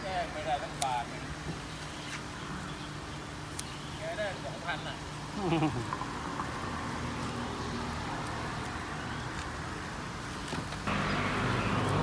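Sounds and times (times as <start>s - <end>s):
traffic noise: 0.0s - 12.0s
vehicle engine running: 9.8s - 12.0s.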